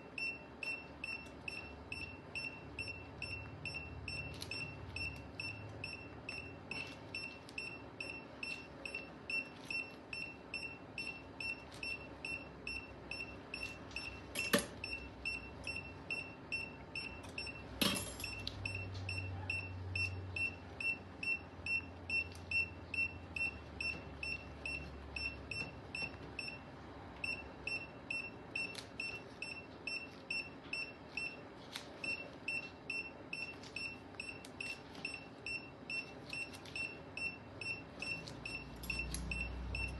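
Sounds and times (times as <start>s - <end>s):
patient monitor beeping: 0.0s - 39.9s.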